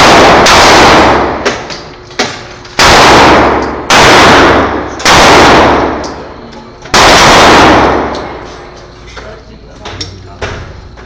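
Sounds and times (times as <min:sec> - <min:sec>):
loud gunshots with echo: 0:00.0 - 0:08.5.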